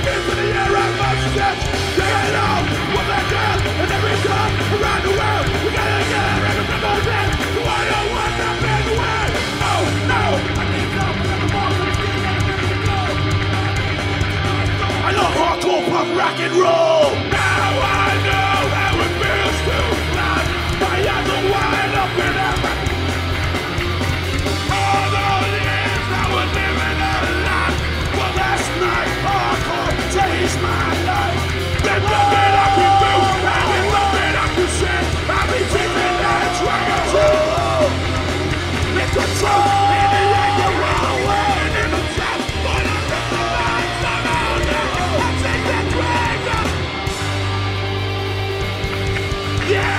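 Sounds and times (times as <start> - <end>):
shouted vocals: 0.0 - 23.6, 24.5 - 47.3, 49.2 - 49.9
punk band playing loud: 0.0 - 49.9.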